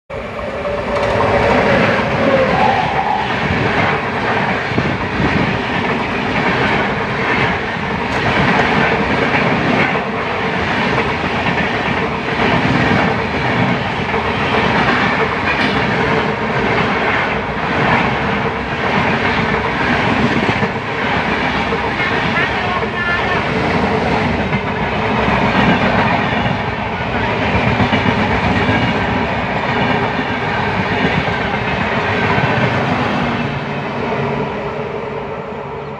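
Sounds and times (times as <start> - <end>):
train wheels rumbling on track: 0.1 - 35.9.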